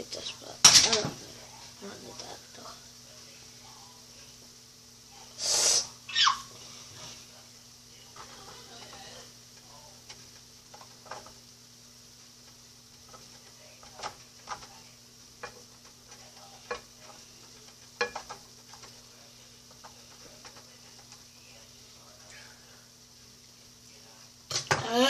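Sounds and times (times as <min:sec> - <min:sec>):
faint hiss: 0:00.0 - 0:25.0
steady low hum: 0:00.0 - 0:25.0
utensils knocking on dishes: 0:16.6 - 0:18.9.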